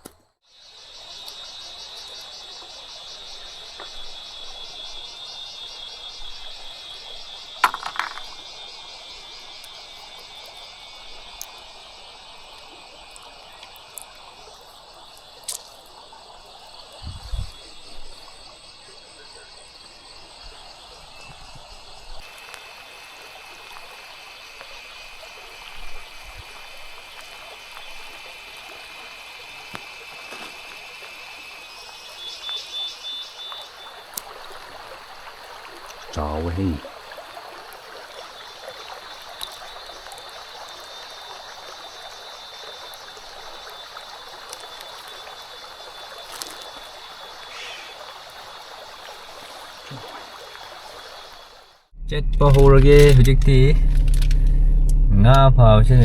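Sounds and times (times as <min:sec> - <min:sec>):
running river water: 0:00.0 - 0:56.0
scattered clicks: 0:52.1 - 0:55.4.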